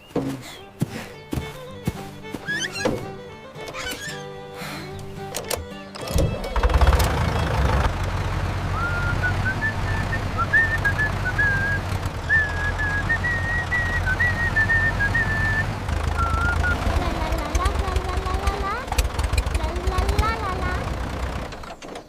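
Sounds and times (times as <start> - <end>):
person whistling a tune: 8.7 - 16.9.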